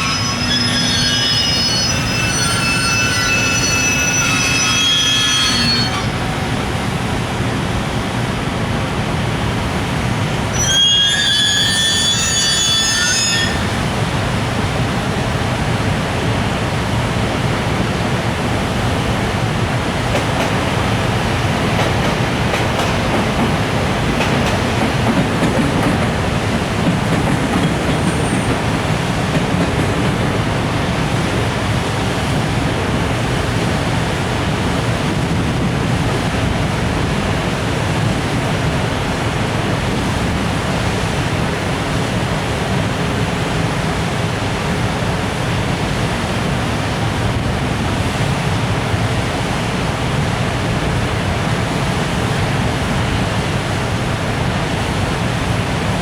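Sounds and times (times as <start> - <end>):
high wheel squeal: 0.0 - 6.3, 10.5 - 14.1, 27.6 - 29.3
train wheels rumbling on rails: 0.0 - 56.0.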